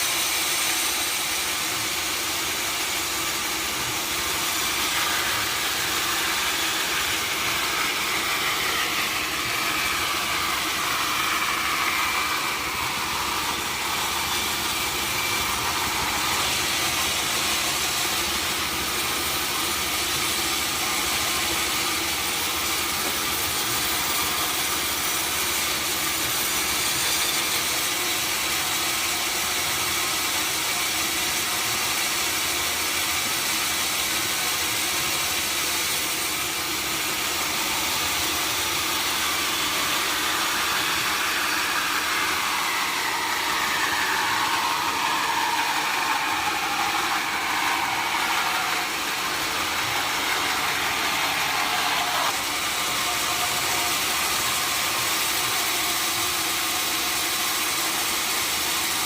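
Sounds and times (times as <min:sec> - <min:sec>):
sawmill machinery running: 0:00.0 - 0:59.0
whine falling in pitch: 0:39.7 - 0:52.3.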